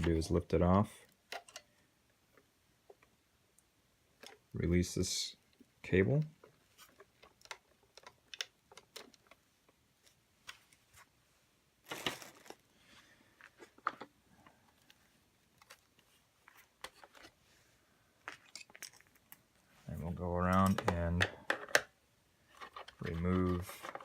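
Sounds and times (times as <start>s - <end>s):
plastic parts clicking: 1.0s - 3.1s, 4.2s - 4.5s, 6.2s - 9.8s, 18.2s - 19.4s, 20.4s - 24.0s.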